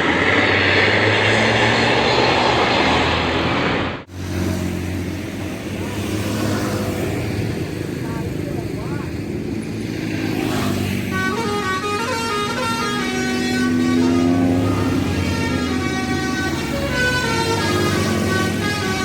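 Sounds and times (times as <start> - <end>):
bus engine running: 0.0 - 19.0
bus horn playing a tune: 11.1 - 19.0.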